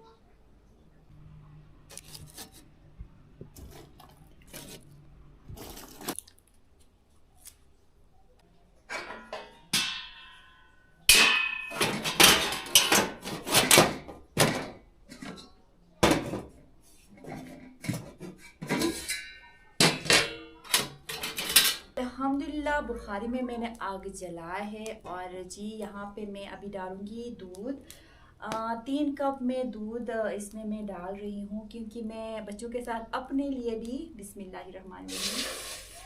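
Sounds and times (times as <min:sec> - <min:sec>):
stove being handled: 0:08.9 - 0:10.3, 0:11.1 - 0:21.9
metal pots clanking: 0:08.9 - 0:16.6, 0:17.2 - 0:22.0.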